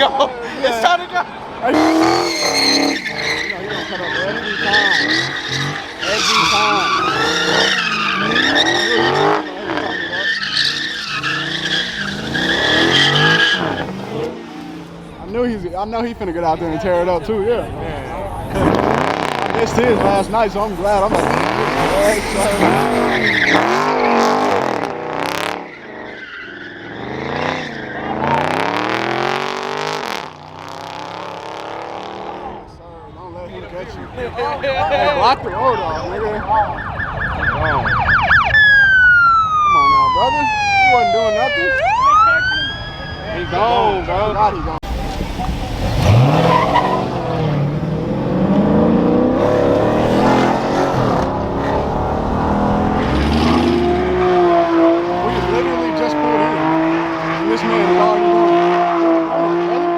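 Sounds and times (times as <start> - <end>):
tyres spinning and squealing: 0.6 - 31.4, 37.7 - 59.6
car engine revving: 1.4 - 32.7, 44.5 - 59.9.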